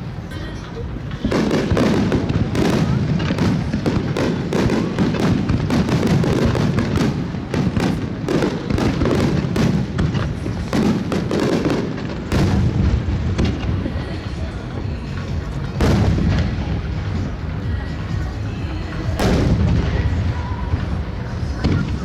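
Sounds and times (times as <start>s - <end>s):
fireworks crackling: 0.0s - 22.0s
low rumbling boom: 12.3s - 22.0s.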